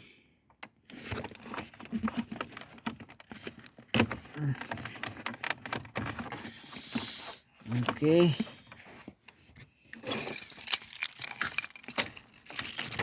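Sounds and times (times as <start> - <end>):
clicks and knocks in car console: 0.5 - 7.0.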